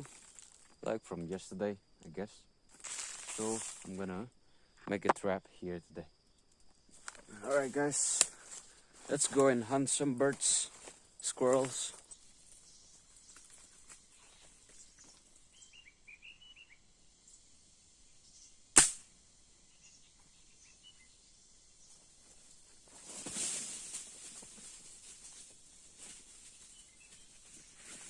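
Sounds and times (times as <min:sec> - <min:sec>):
rustling: 0:02.7 - 0:04.0, 0:22.2 - 0:28.0
bird chirps: 0:11.9 - 0:18.6, 0:19.6 - 0:22.0
airgun shot: 0:18.8 - 0:19.1.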